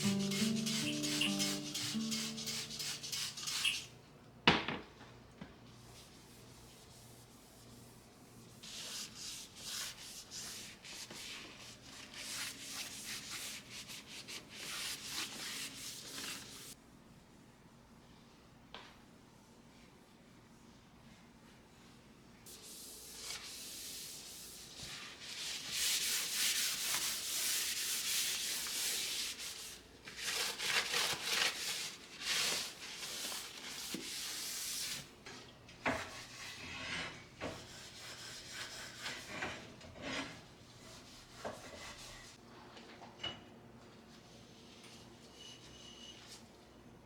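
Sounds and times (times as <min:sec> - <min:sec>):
scrubbing on hard surface: 0:00.0 - 0:03.9.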